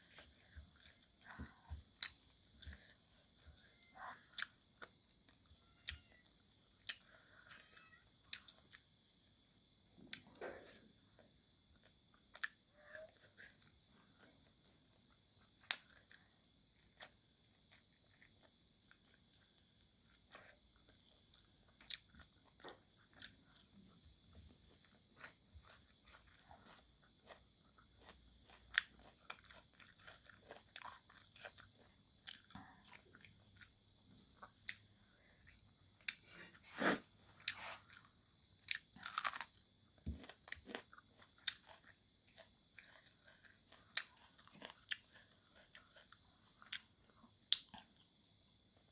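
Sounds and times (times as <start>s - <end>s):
faint crickets chirping: 0.0s - 48.9s
person chewing food: 0.0s - 48.9s.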